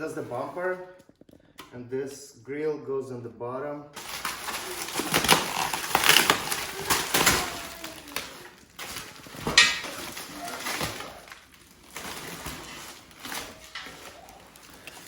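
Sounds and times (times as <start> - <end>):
packaging crackling and scraping: 4.0 - 15.0.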